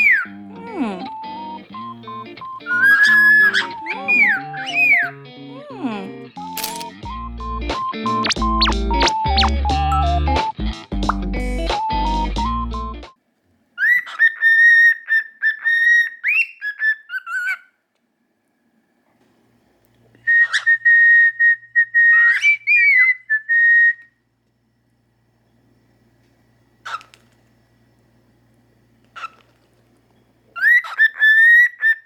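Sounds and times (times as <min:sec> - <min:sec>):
cockatiel whistling a tune: 0:01.1 - 0:05.1, 0:07.1 - 0:10.1, 0:20.3 - 0:24.1.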